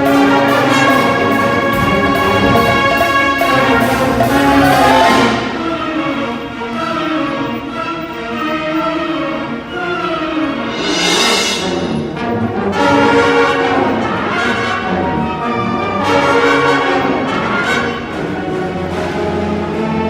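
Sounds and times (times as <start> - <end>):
marching band playing brass: 0.0 - 20.0.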